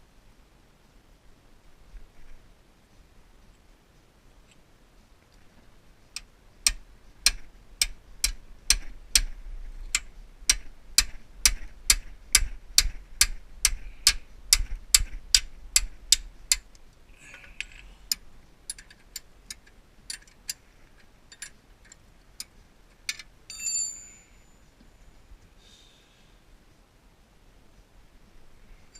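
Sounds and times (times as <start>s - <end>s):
buzzing rattle with metallic ring: 23.5s - 25.2s.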